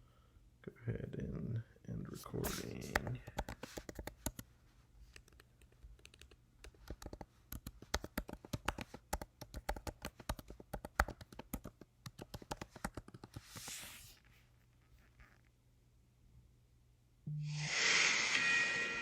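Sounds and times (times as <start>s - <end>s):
brief hiss: 17.3s - 19.0s.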